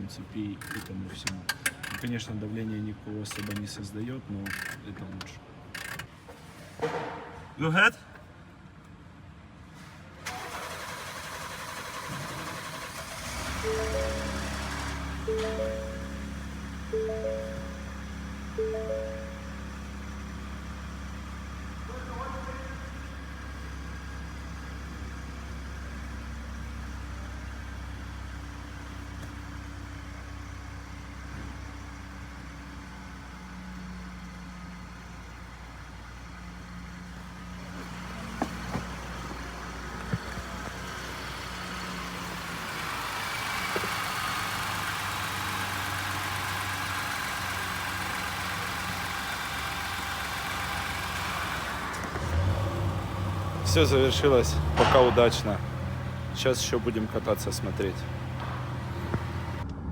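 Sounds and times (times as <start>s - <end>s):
car engine idling: 10.3s - 59.6s
engine knocks: 37.7s - 59.6s.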